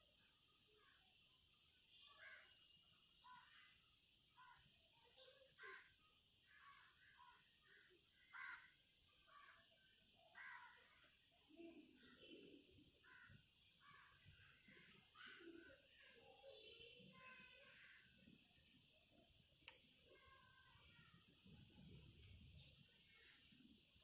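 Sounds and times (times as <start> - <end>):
faint birds calling: 0.0 - 24.0
steady high hiss: 10.8 - 24.0.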